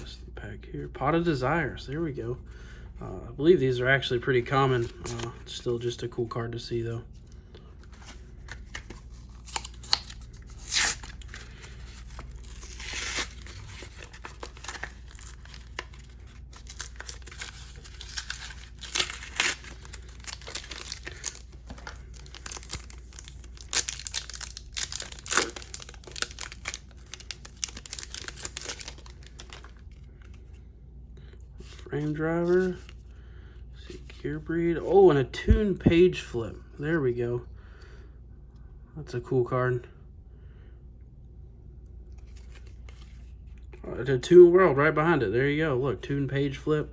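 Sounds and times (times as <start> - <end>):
packaging ripping and crinkling: 8.4 - 29.8.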